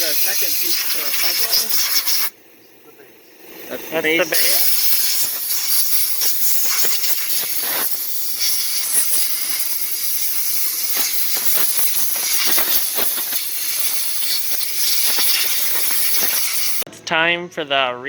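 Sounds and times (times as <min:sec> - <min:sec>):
high-pitched hiss: 0:00.0 - 0:16.9.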